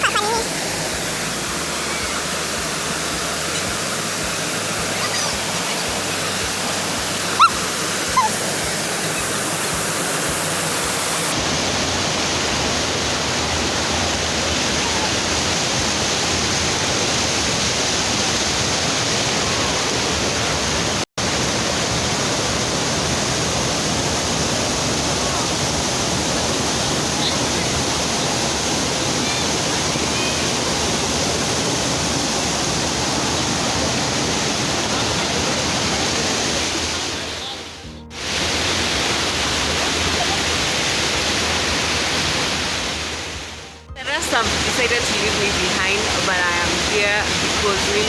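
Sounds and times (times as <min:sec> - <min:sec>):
rushing water: 0:00.0 - 0:48.0.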